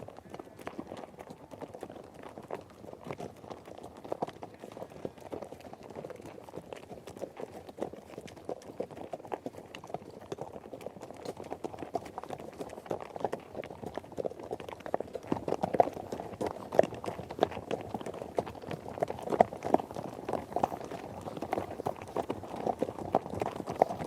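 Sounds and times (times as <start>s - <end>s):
running horse hooves: 0.0s - 24.0s.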